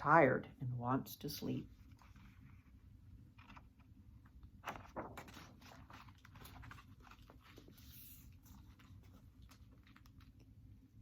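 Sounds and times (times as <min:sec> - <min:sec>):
soft rustle: 0:04.6 - 0:10.5.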